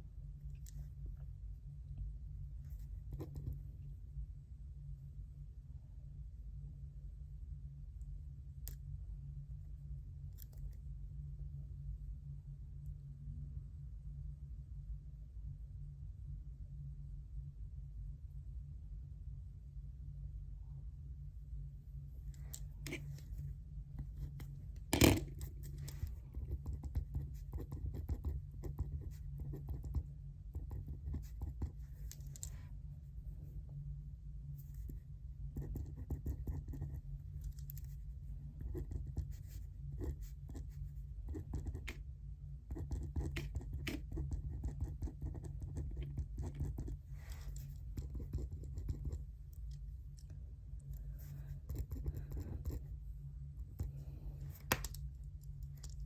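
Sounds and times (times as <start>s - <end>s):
steady low hum: 0.0s - 56.0s
pen scratching on paper: 25.0s - 32.1s, 35.6s - 37.0s, 38.6s - 42.0s, 42.7s - 49.3s, 51.2s - 52.9s.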